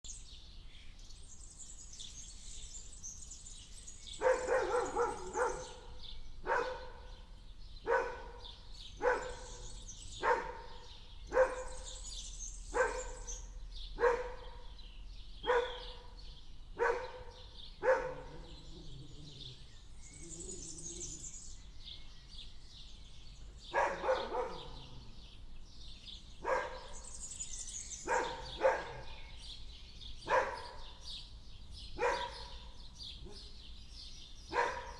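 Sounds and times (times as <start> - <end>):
birds chirping: 0.1 - 34.9
dog barking: 4.2 - 7.2, 7.8 - 12.1, 12.7 - 13.4, 14.0 - 14.8, 15.4 - 16.2, 16.8 - 19.6, 23.7 - 25.2, 26.4 - 27.1, 28.0 - 29.4, 30.2 - 31.0, 32.0 - 33.6, 34.5 - 34.9.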